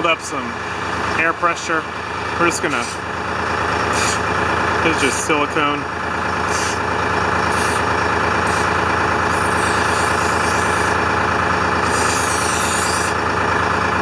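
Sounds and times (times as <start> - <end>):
diesel engine idling: 0.0 - 14.0
air hissing bursts: 3.8 - 4.3, 6.5 - 6.8, 7.5 - 11.0, 11.8 - 13.2.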